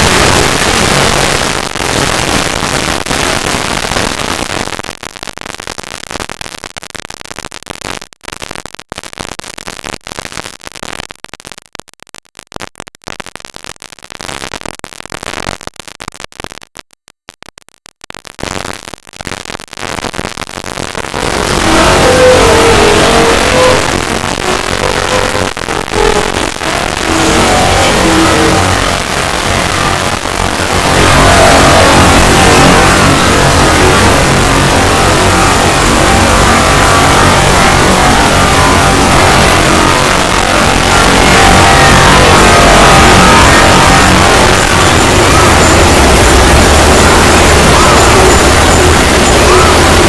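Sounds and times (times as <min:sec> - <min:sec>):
distorted sped-up alert audio: 0:00.0 - 0:02.4, 0:21.1 - 0:50.0
cluster of tones: 0:21.1 - 0:50.0.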